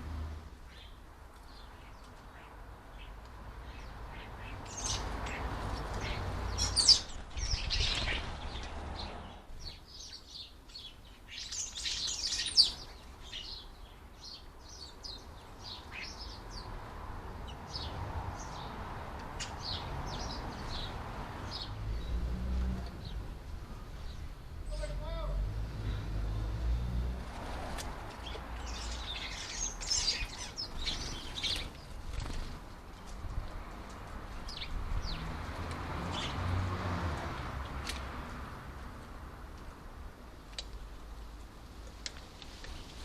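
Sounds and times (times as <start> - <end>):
small birds chirping: 0.6 - 25.3, 28.1 - 36.6.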